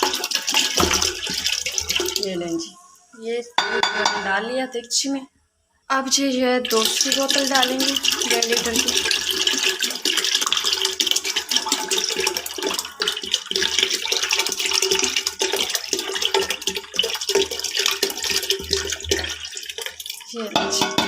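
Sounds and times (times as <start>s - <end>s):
milk pouring into a pot: 0.0s - 2.4s, 6.6s - 21.0s.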